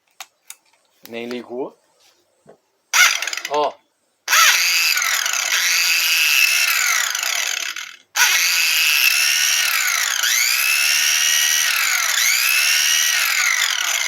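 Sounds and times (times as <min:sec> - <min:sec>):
angle grinder whining: 0:03.0 - 0:03.6, 0:04.3 - 0:14.0.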